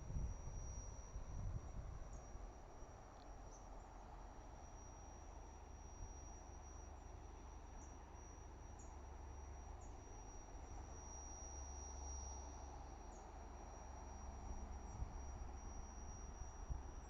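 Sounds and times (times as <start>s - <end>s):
wind on microphone: 0.0s - 2.2s
cricket trilling: 0.0s - 17.0s.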